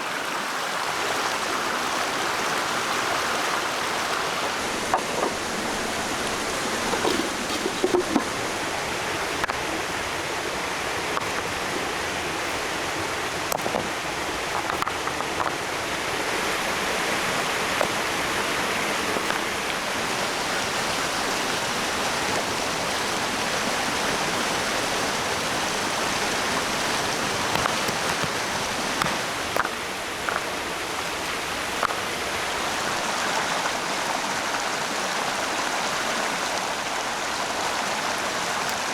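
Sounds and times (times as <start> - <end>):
flowing water rushing: 0.0 - 38.9.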